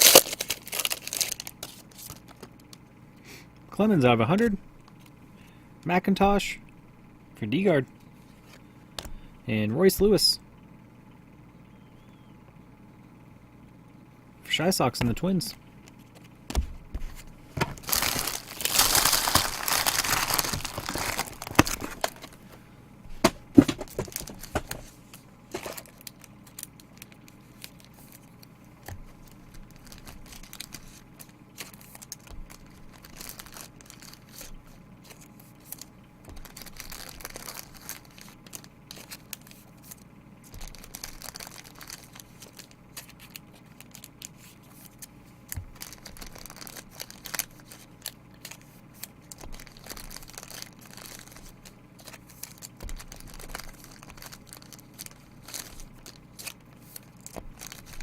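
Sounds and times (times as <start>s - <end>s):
plastic wrapping tearing and crinkling: 0.0s - 2.5s, 17.6s - 22.5s, 23.6s - 24.9s, 25.5s - 58.0s
cards rustling and clicking: 0.0s - 2.8s, 15.0s - 22.6s, 23.2s - 58.0s.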